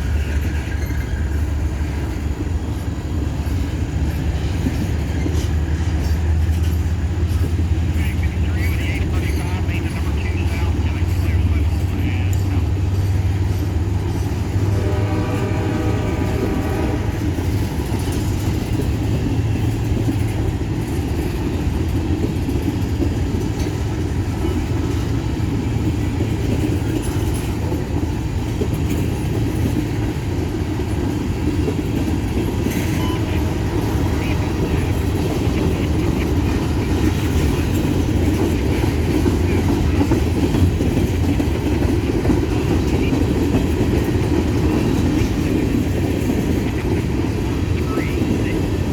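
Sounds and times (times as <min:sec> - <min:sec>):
diesel locomotive rumble: 0:00.0 - 0:48.9
rail cars rolling on track: 0:00.0 - 0:48.9
train horn: 0:14.4 - 0:17.6, 0:32.6 - 0:35.4.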